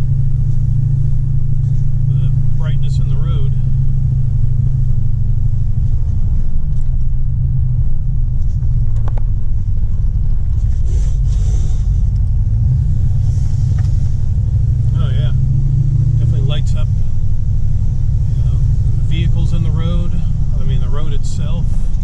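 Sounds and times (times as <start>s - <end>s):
pickup engine rumble: 0.0s - 22.0s
road noise inside cab: 0.0s - 22.0s.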